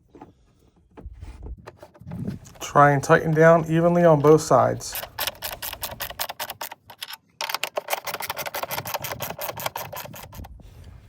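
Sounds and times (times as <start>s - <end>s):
socket ratchet clicking: 4.2s - 10.5s.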